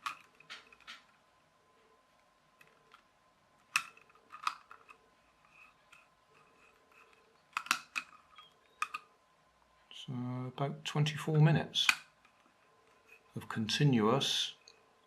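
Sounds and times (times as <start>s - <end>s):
puzzle cube plastic clicks: 0.0s - 1.1s, 2.6s - 9.1s.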